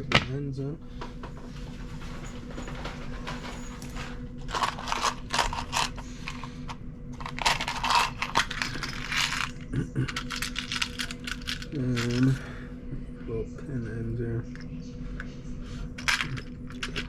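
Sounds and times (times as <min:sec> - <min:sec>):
steady low hum: 0:00.0 - 0:17.0
metal pins clicking and rattling: 0:07.2 - 0:12.3.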